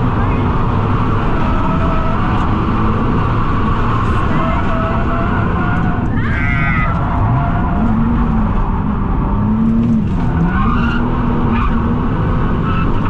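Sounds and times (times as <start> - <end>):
car engine revving hard: 0.0 - 6.2
road and tyre noise: 0.0 - 13.0
tyres skidding and squealing: 0.0 - 13.0.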